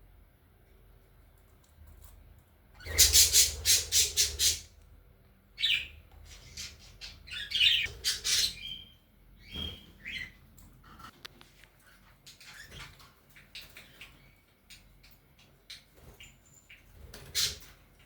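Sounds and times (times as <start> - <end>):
budgerigars squawking: 2.8 - 4.7, 5.6 - 8.8.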